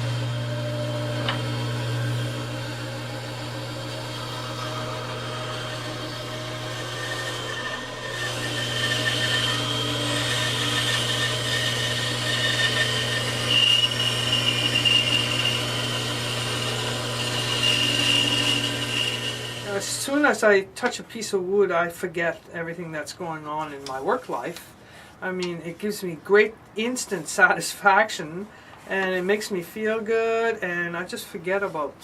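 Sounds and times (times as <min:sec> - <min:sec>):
woodworking power tool running: 0:00.0 - 0:20.4.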